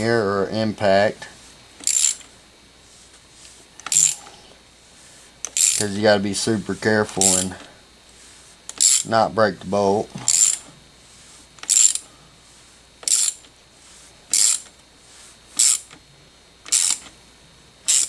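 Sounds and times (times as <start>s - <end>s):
ratchet pawl clicking: 1.8s - 2.4s, 3.8s - 4.3s, 5.4s - 6.0s, 7.2s - 7.7s, 8.7s - 9.1s, 10.2s - 10.7s, 11.6s - 12.1s, 13.0s - 13.5s, 14.3s - 14.8s, 15.5s - 16.0s, 16.6s - 17.2s.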